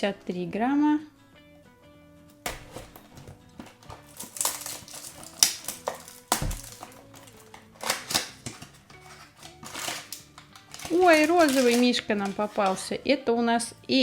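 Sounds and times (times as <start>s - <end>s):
soft background music: 0.0s - 14.0s
cardboard box rustling and ripping: 2.6s - 12.9s.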